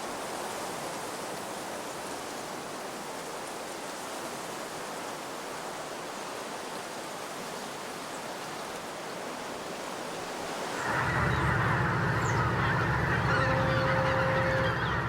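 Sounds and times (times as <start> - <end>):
geese honking: 10.8 - 15.0
steady rushing noise: 10.8 - 15.0.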